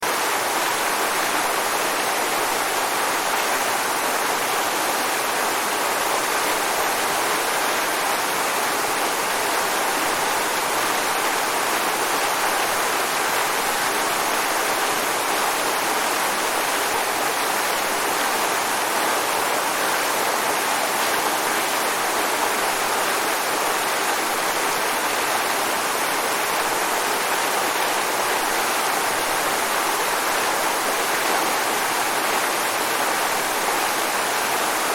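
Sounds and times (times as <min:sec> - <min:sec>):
waterfall rushing: 0:00.0 - 0:34.9.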